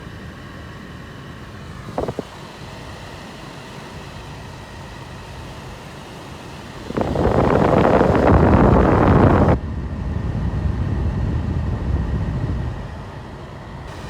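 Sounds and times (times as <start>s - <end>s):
car cabin engine hum: 1.6s - 3.1s, 6.6s - 13.2s.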